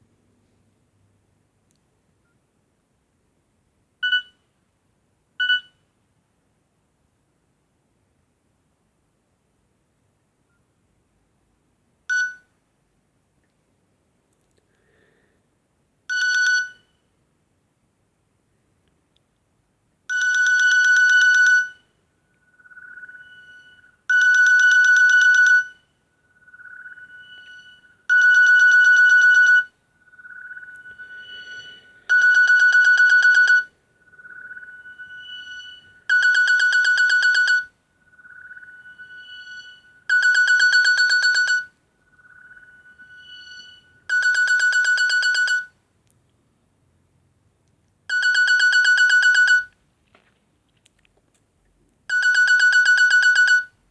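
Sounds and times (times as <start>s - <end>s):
buzzy electronic ringtone: 22.9s - 25.8s, 26.5s - 45.7s
softer quieter tone: 30.0s - 32.2s, 34.0s - 36.1s.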